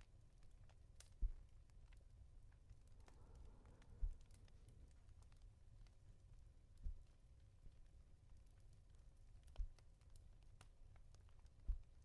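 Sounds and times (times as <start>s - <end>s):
fireplace crackles: 0.0s - 12.0s
soft pat on a pillow: 6.8s - 7.1s, 11.6s - 12.0s.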